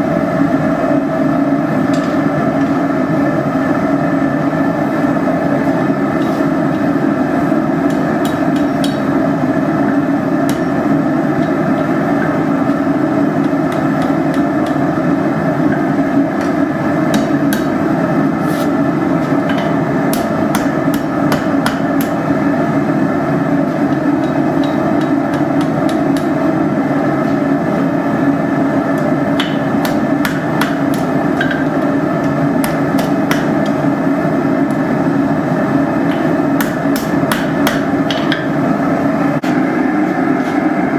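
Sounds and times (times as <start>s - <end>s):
hammer striking hot iron: 7.6s - 38.7s.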